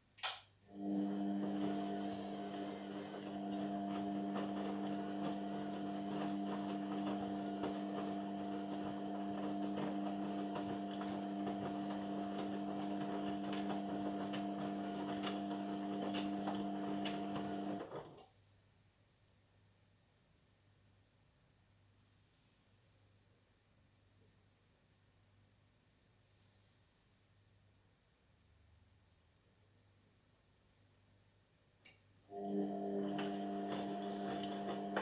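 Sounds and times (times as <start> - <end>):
washing machine motor hum: 0.7 - 18.2, 32.3 - 35.0.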